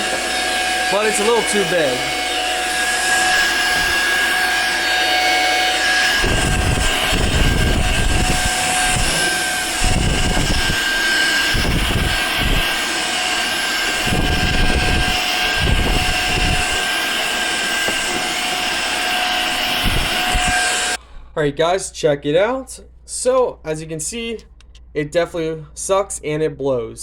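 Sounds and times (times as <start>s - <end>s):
fan motor high whine: 0.0s - 21.0s
rush of air: 6.2s - 13.0s.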